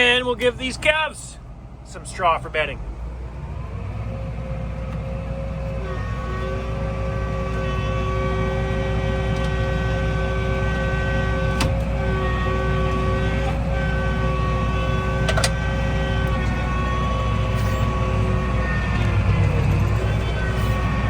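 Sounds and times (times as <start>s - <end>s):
tractor engine drone: 0.0s - 21.0s
whine shifting in pitch: 3.0s - 21.0s.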